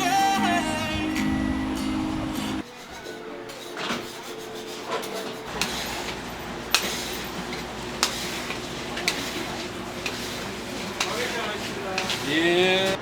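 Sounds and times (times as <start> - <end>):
utensils and dishes clinking: 2.6 - 13.0.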